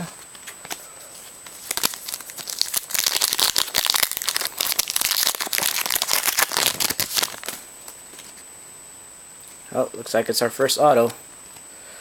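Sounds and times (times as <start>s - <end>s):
wrapper crinkling: 1.5s - 7.6s.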